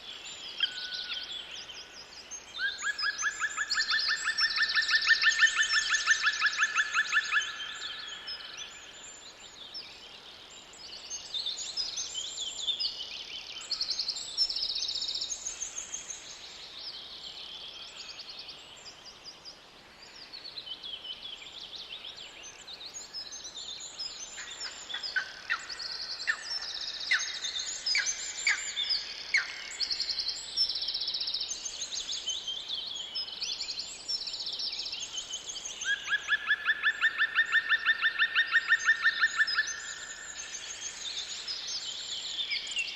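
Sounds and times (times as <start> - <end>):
birds singing: 20.0 - 42.9.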